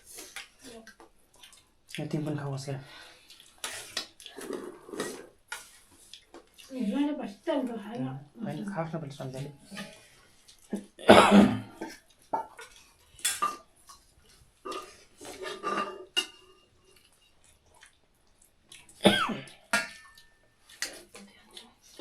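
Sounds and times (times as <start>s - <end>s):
plates and utensils clinking: 14.7s - 16.7s, 19.7s - 21.0s.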